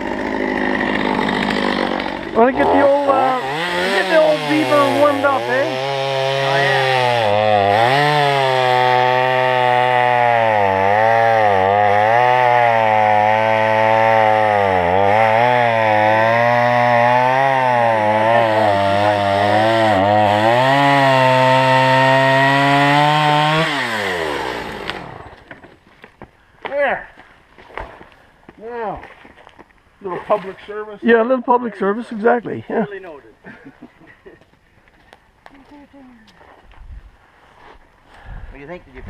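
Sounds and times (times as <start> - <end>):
chainsaw cutting wood: 0.0 - 25.8.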